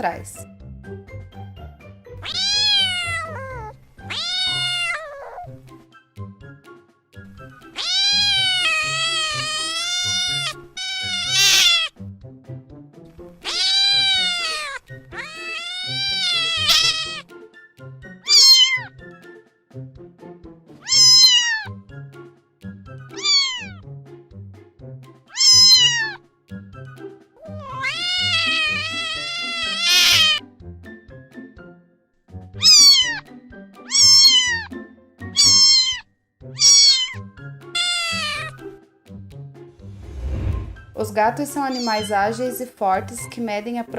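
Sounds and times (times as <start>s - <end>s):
cat meowing: 2.2s - 5.6s, 7.6s - 12.0s, 13.4s - 17.3s, 18.2s - 18.9s, 20.8s - 21.8s, 23.1s - 23.8s, 25.3s - 26.2s, 27.4s - 30.4s, 32.6s - 38.6s, 41.6s - 42.2s
background music with steady beat: 5.5s - 10.8s, 11.9s - 13.8s, 16.6s - 33.9s.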